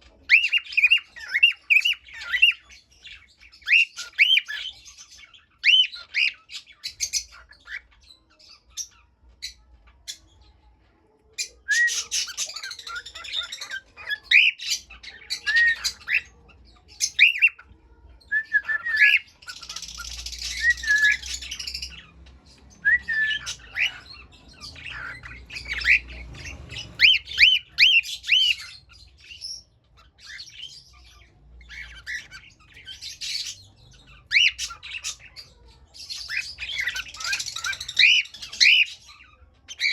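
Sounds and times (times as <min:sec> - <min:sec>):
cockatiel chirps and whistles: 0:11.6 - 0:14.6, 0:18.4 - 0:21.6, 0:22.8 - 0:24.0, 0:27.0 - 0:28.7
harsh bird squawks: 0:27.0 - 0:28.7.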